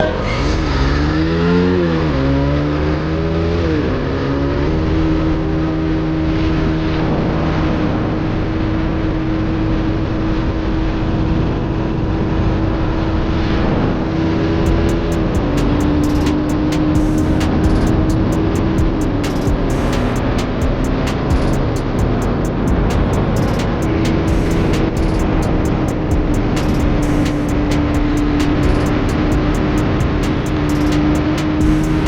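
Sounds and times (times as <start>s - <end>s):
motorcycle engine accelerating: 14.7s - 32.0s.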